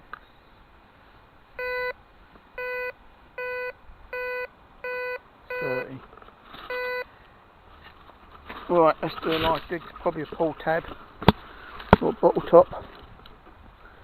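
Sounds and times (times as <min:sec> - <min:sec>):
metal detector beeps: 0:01.6 - 0:01.9, 0:02.6 - 0:05.9, 0:06.7 - 0:07.1.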